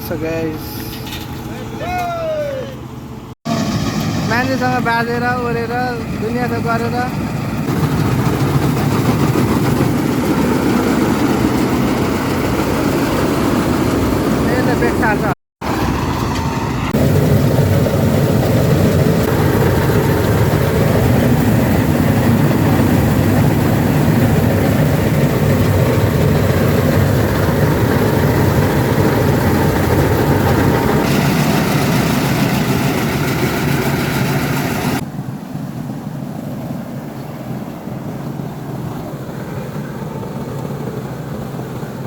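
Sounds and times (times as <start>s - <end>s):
harvesting machine engine running: 3.1s - 35.0s.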